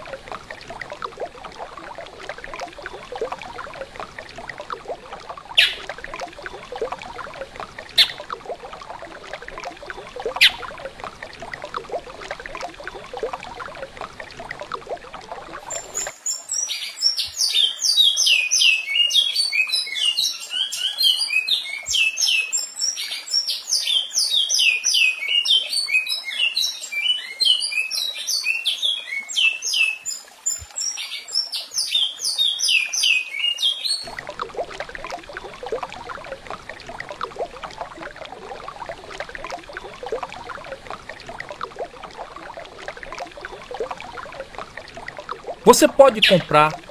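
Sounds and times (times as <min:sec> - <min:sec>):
water-like rush: 0:00.0 - 0:16.2
bird song of whistled notes: 0:05.6 - 0:05.8, 0:08.0 - 0:08.2, 0:10.4 - 0:10.6, 0:15.7 - 0:23.1
sharp bird chirps: 0:05.6 - 0:05.8, 0:08.0 - 0:08.2, 0:10.4 - 0:10.6.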